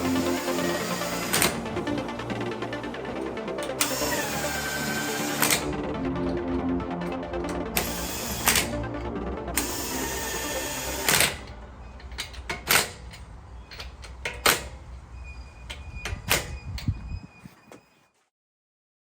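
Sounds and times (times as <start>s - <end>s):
background music: 0.0s - 13.1s.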